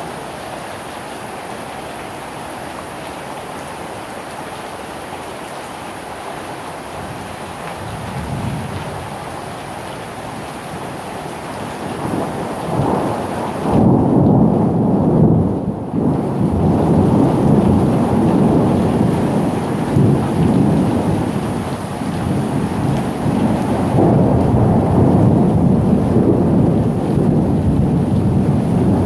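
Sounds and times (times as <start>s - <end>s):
steady rain: 0.0s - 29.0s
rolling thunder rumble: 7.8s - 9.4s, 11.6s - 29.0s.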